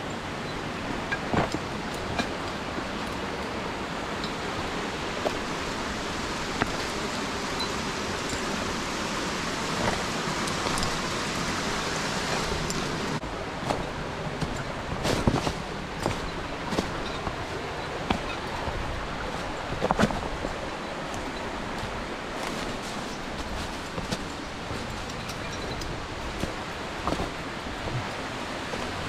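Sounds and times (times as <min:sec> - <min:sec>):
stream water rushing: 0:00.0 - 0:29.0.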